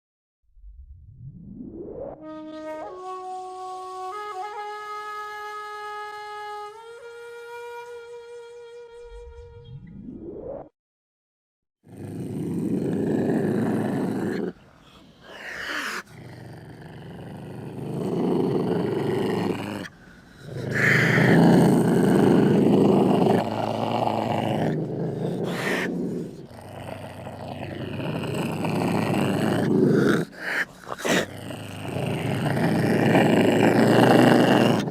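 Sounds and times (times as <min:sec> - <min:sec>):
wild cat growling: 0:11.9 - 0:34.9
wild cat snarling: 0:11.9 - 0:34.9.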